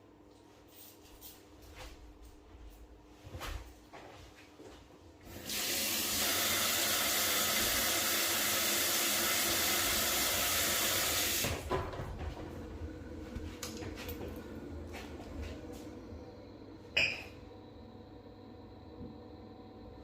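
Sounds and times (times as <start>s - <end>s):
water running: 5.2s - 16.2s.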